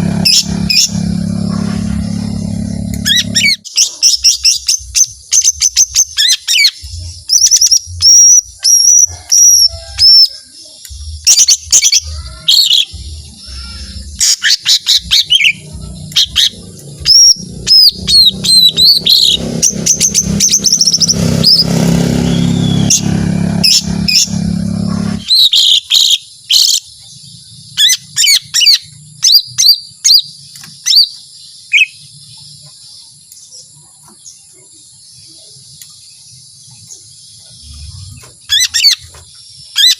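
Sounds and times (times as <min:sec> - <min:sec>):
low rumble: 0:00.0 - 0:03.5
bird singing whistled notes: 0:03.0 - 0:23.1, 0:25.2 - 0:39.9.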